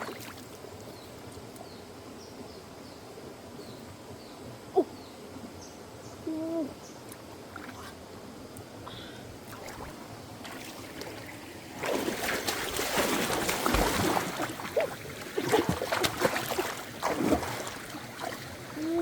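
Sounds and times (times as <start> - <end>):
water splashing and sloshing: 0.0 - 1.5, 7.1 - 8.0, 9.4 - 19.0.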